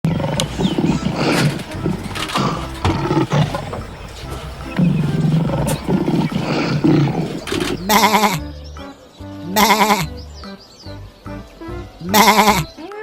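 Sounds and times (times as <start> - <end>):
cows mooing: 0.1 - 8.5, 12.1 - 12.7.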